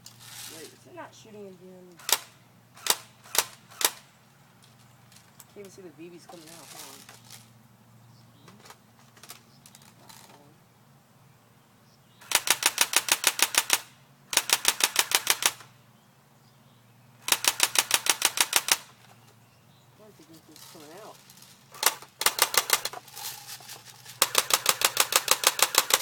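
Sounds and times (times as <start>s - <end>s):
electric airsoft gun clicking: 2.0s - 4.0s, 12.2s - 15.7s, 17.3s - 18.9s, 21.8s - 23.0s, 24.2s - 26.0s.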